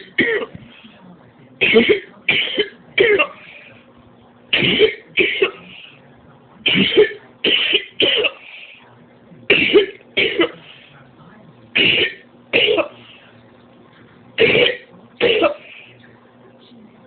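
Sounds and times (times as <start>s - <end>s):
woman coughing: 0.0s - 0.6s, 1.6s - 3.5s, 4.5s - 5.9s, 6.6s - 8.6s, 9.5s - 10.6s, 11.8s - 13.0s, 14.4s - 15.8s.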